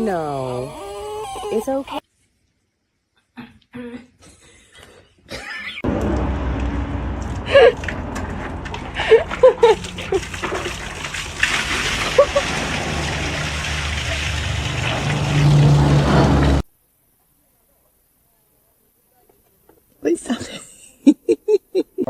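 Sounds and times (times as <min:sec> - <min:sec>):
water spraying: 0:07.3 - 0:16.6.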